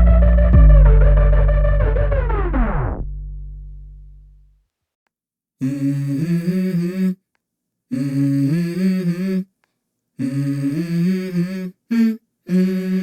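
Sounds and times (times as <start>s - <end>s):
person humming a melody: 5.6s - 7.2s, 7.9s - 9.5s, 10.2s - 13.0s.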